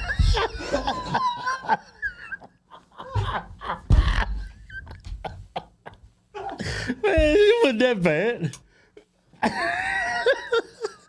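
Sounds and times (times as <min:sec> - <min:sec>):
man whimpering and moaning: 0:06.4 - 0:07.6.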